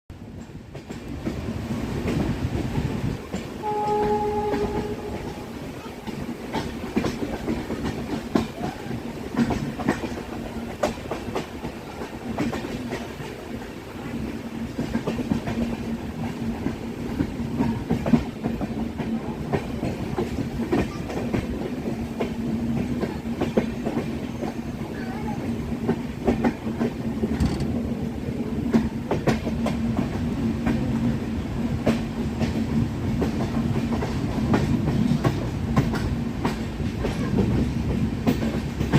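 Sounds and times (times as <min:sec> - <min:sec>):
train rumbling on tracks: 0:00.1 - 0:38.9
train horn: 0:03.6 - 0:06.1
wheels clacking over rail joints: 0:25.8 - 0:30.8.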